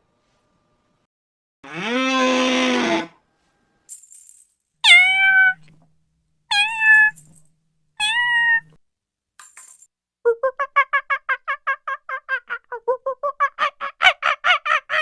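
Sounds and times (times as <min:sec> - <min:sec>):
cat meowing: 0:04.8 - 0:05.7, 0:06.5 - 0:07.2, 0:08.0 - 0:08.8.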